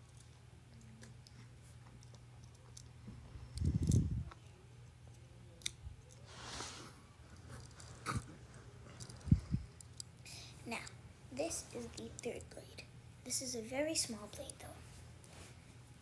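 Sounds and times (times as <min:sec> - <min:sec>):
soft rustle: 0:06.1 - 0:09.9, 0:13.4 - 0:16.0.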